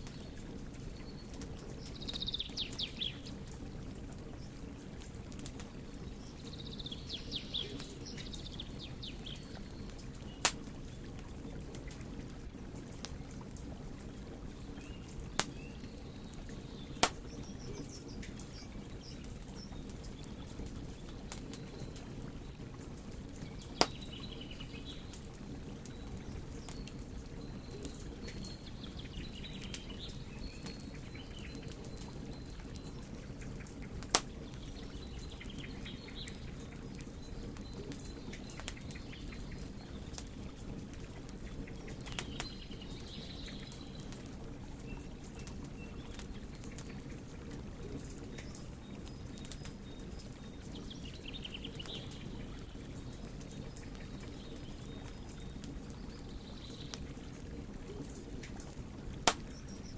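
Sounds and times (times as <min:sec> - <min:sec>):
birds chirping faintly: 0:00.0 - 0:12.2, 0:13.1 - 0:59.9
fire popping: 0:00.0 - 0:59.9
wood fire crackling: 0:00.0 - 0:59.9.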